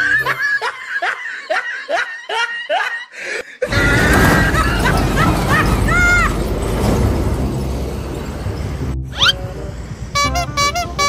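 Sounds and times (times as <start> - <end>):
high-pitched laugh: 0.0 - 6.2
short pitched horn notes: 10.2 - 11.0.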